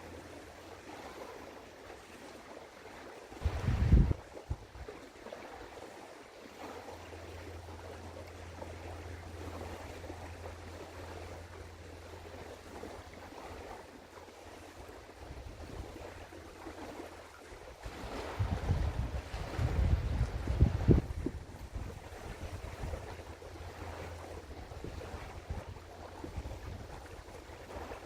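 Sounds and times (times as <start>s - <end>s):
river water: 0.0s - 28.0s
wind: 0.0s - 28.0s
wind buffeting microphone: 3.4s - 4.9s, 14.8s - 28.0s
steady low hum: 6.7s - 28.0s.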